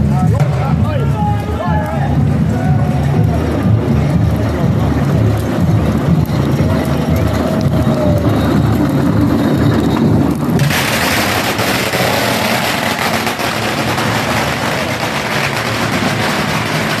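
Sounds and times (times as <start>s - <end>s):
firecrackers crackling: 0.0s - 17.0s.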